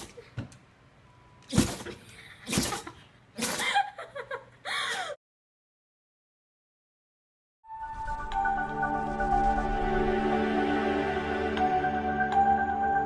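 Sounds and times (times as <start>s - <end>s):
pet sneezing: 1.5s - 3.8s.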